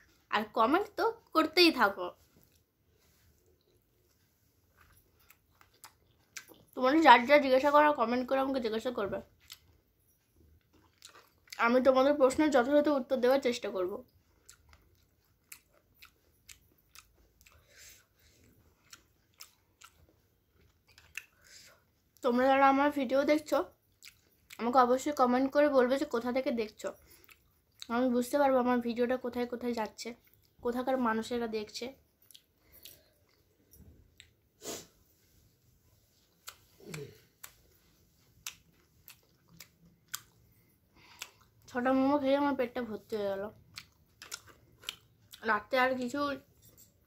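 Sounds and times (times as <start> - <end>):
person chewing food: 2.2 - 6.8, 9.3 - 11.6, 14.1 - 22.2, 23.8 - 24.6, 27.0 - 27.9, 32.1 - 41.8, 43.6 - 47.0
person eating with mouth clicks: 36.4 - 41.7, 43.6 - 45.4.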